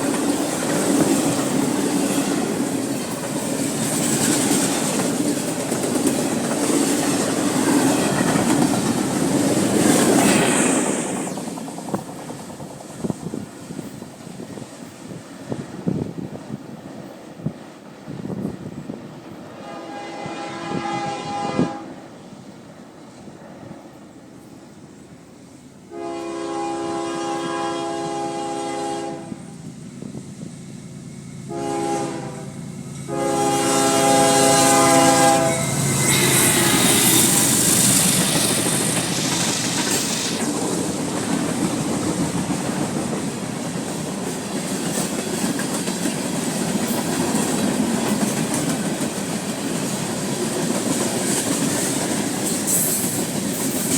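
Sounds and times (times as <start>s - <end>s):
railcars clickety-clack over joints: 0.0s - 53.9s
wheels rushing on rail: 0.0s - 53.9s
locomotive horn blowing: 19.6s - 22.0s, 25.9s - 29.6s, 31.4s - 37.4s.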